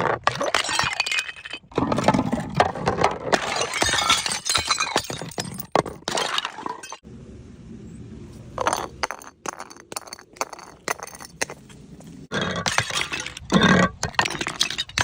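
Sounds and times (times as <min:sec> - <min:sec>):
glass bottles shattering: 0:00.2 - 0:07.0, 0:12.4 - 0:15.0.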